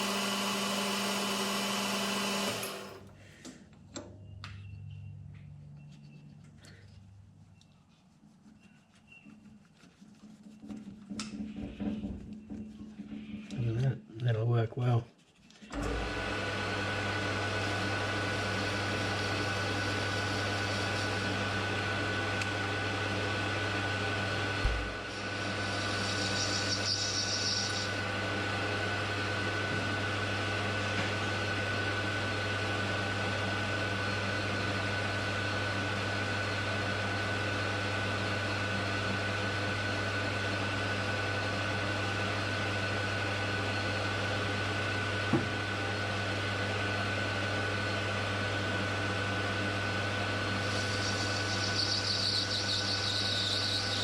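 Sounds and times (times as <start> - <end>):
electric motor humming and whining: 0.0 - 3.1, 15.7 - 54.0
thump: 45.3 - 45.5.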